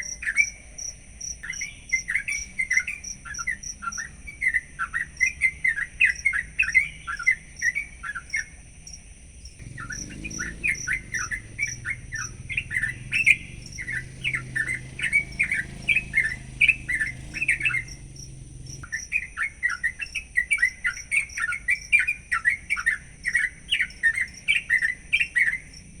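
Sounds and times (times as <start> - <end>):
bulbul singing chattering notes: 9.6 - 25.6.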